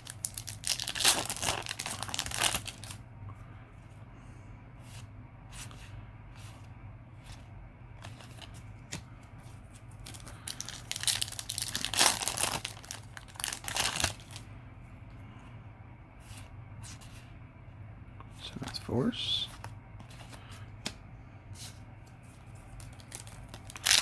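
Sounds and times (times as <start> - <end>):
foil wrapper tearing and crinkling: 0.0 - 3.0, 10.0 - 14.4, 22.8 - 24.0.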